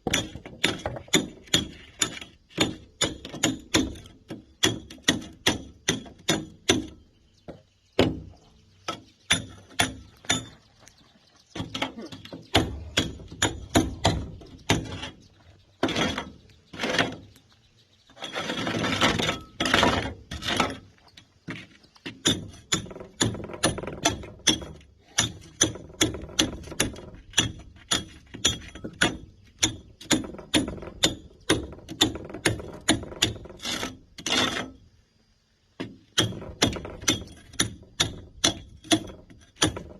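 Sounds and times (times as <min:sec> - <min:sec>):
rough scraping: 0:11.8 - 0:22.8.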